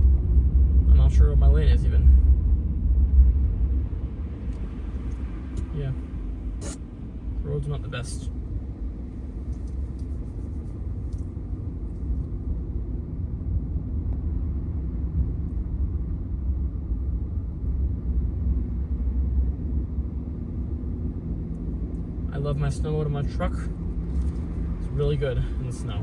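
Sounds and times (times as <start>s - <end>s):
tyres on snowy road: 17.8s - 26.0s.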